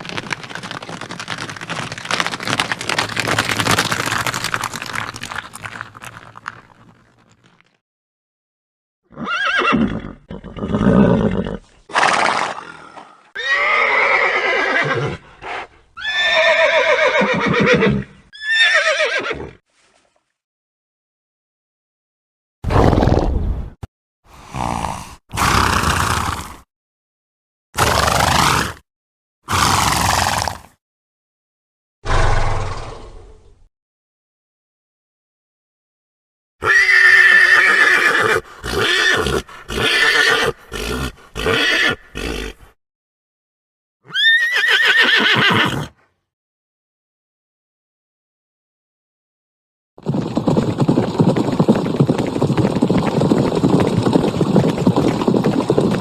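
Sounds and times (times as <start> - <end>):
horse neighing: 9.1 - 11.6, 13.4 - 15.2, 16.0 - 19.6, 24.4 - 26.6, 27.8 - 28.8, 29.5 - 30.7, 36.6 - 42.7, 44.0 - 46.0.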